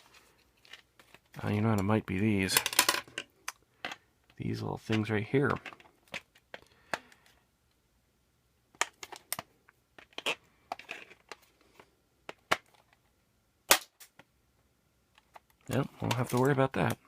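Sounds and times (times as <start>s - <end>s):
plastic cassette clicks and snaps: 8.8s - 11.4s.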